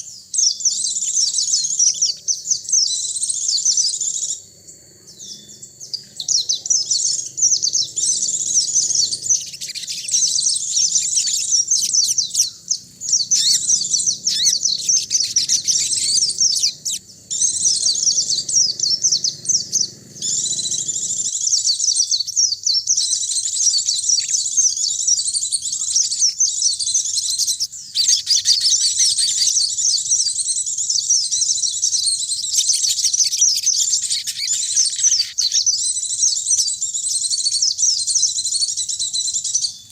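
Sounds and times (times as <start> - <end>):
birds twittering: 0.0 - 39.9
faint low hum: 3.1 - 21.6.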